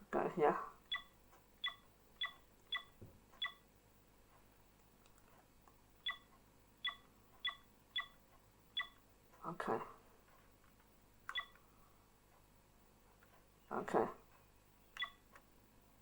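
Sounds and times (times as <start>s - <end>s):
camcorder button beeps: 0.9s - 3.6s, 6.0s - 8.2s, 8.8s - 9.0s, 11.3s - 11.6s, 15.0s - 15.2s.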